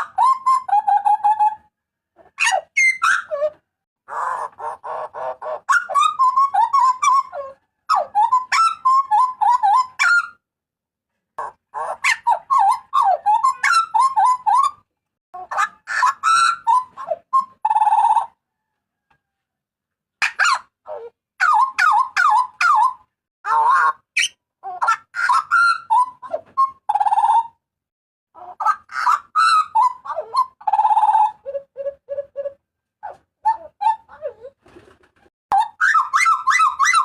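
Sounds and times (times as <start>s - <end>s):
butcherbird calling: 35.5s - 37.0s.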